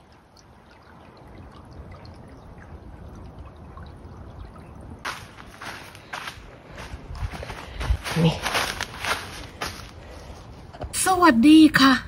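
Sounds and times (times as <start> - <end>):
running water trickling: 0.0 - 7.8.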